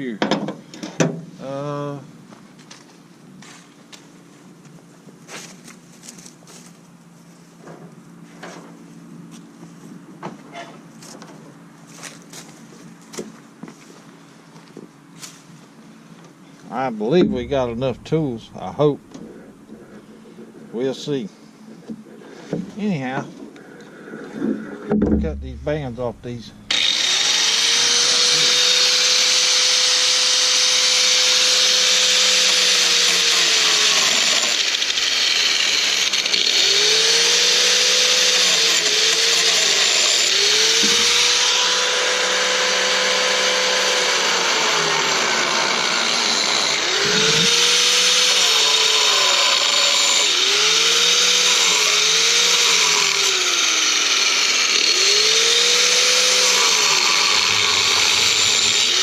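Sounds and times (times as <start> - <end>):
power tool cutting metal: 17.1 - 19.3, 25.2 - 59.0.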